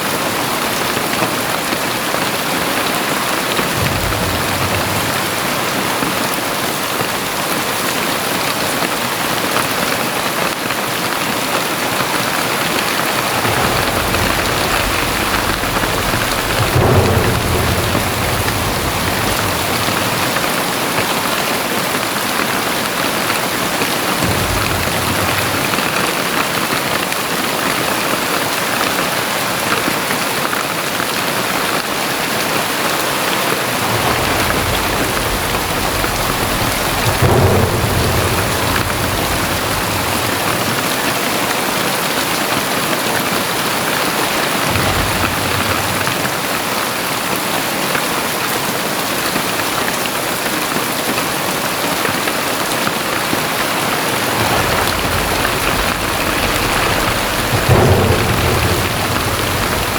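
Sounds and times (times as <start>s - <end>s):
heavy rain pouring: 0.0s - 59.9s
low rumble: 3.5s - 6.2s, 12.6s - 21.4s, 24.2s - 26.6s, 33.6s - 41.4s, 53.1s - 59.9s.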